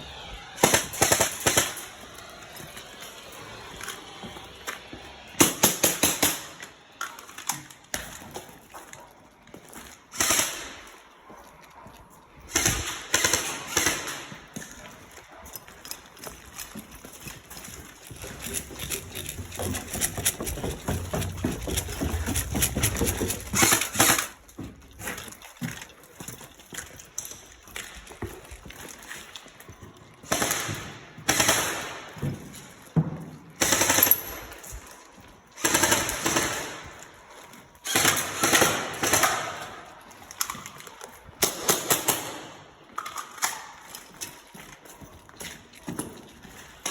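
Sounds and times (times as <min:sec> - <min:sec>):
airsoft guns firing full-auto: 0:00.2 - 0:03.9, 0:05.4 - 0:06.7, 0:10.1 - 0:10.9, 0:12.5 - 0:14.4, 0:30.3 - 0:32.2, 0:33.6 - 0:34.7, 0:35.6 - 0:37.2, 0:37.8 - 0:39.9, 0:41.4 - 0:42.6.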